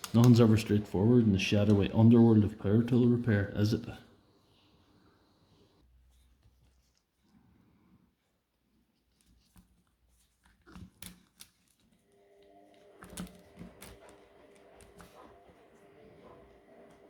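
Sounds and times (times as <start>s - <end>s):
faint steady hum: 11.5s - 17.0s.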